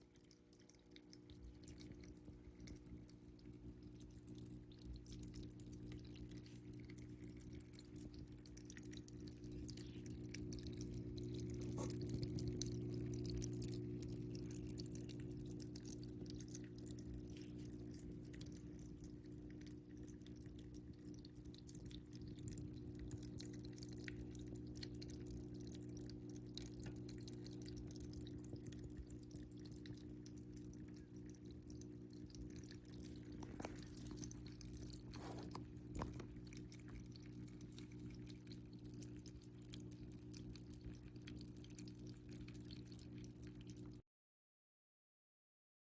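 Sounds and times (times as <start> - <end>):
low pump hum: 0.0 - 44.0
water dripping and trickling: 0.0 - 44.0.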